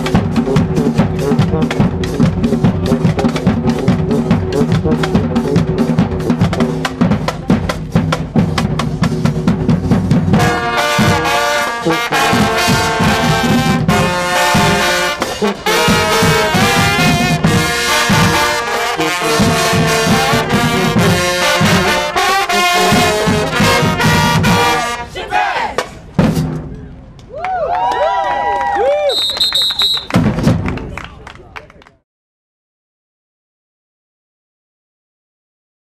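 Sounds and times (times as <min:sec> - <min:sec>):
brass horns playing: 0:00.0 - 0:07.3, 0:07.9 - 0:25.7
marching band drums: 0:00.0 - 0:26.9, 0:29.2 - 0:31.0.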